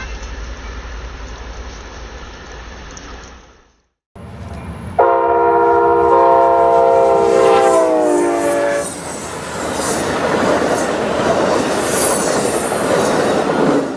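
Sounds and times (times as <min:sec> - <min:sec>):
train air horn blast: 0:05.0 - 0:09.0.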